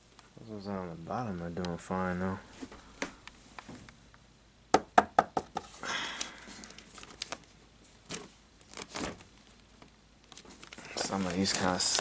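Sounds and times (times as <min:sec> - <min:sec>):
record sleeves knocking and tapping: 0:04.7 - 0:05.7.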